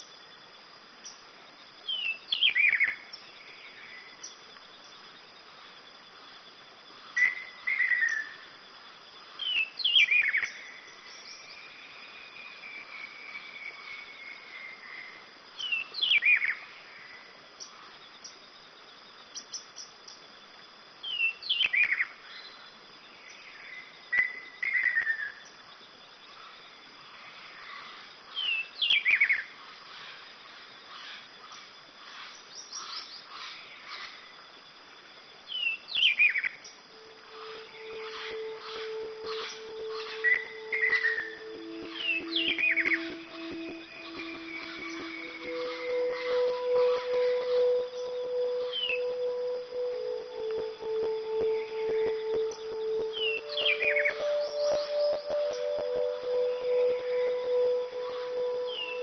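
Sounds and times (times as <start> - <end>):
bird singing: 1.8 - 5.4, 7.0 - 18.4, 21.0 - 25.6, 27.7 - 30.2, 35.5 - 59.0
faint high hum: 36.6 - 59.0
faint wavering whistle: 36.9 - 59.0.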